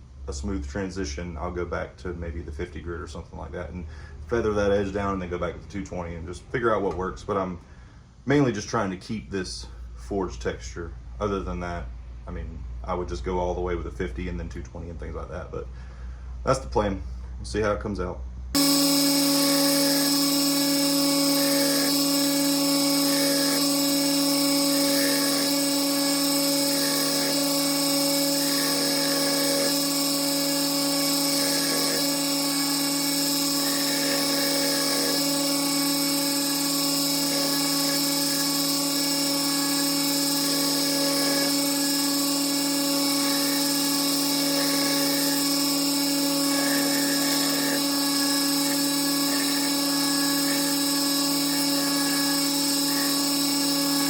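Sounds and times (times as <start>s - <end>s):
belt grinder grinding knife blade: 18.6s - 54.0s.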